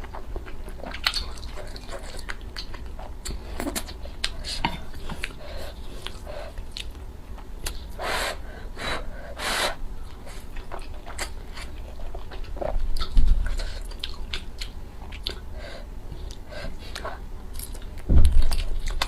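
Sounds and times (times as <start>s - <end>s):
chewing and biting: 10.4s - 15.4s.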